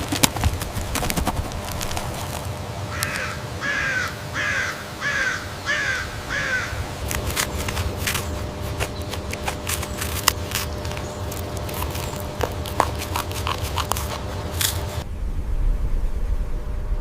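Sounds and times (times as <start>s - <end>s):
bird harsh calls: 2.9s - 14.0s.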